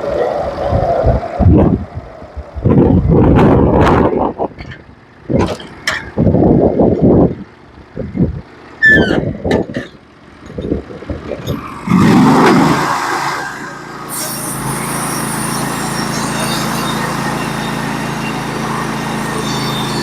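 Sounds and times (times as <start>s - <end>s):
brief squeak: 8.8s - 10.0s
knocks and bumps: 9.1s - 11.6s
small gas engine running: 11.6s - 20.0s.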